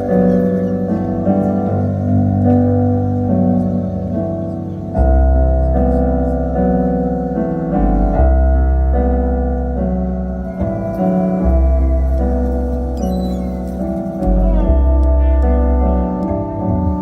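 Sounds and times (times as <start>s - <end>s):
slow piano chords: 0.0s - 17.0s
sustained deep bass: 5.0s - 17.0s.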